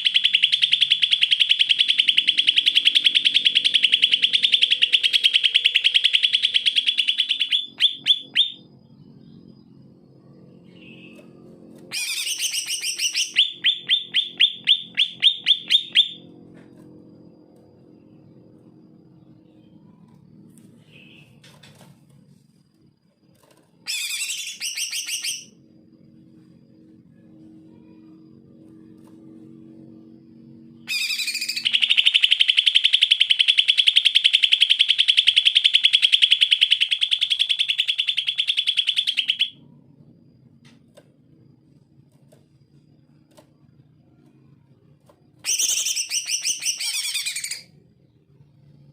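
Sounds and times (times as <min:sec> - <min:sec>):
bird call and rapid trill: 0:00.0 - 0:09.4, 0:10.5 - 0:16.3, 0:20.8 - 0:21.7, 0:23.7 - 0:25.6, 0:30.8 - 0:39.7, 0:45.3 - 0:47.9
faint low hum: 0:00.0 - 0:48.9.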